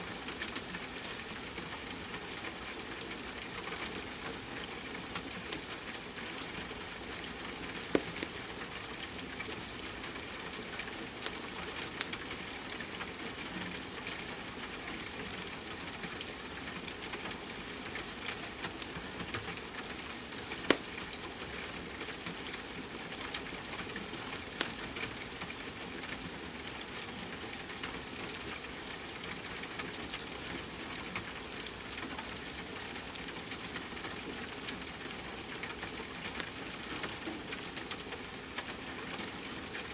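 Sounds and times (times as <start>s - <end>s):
wood fire crackling and popping: 7.8s - 12.8s, 18.4s - 25.4s.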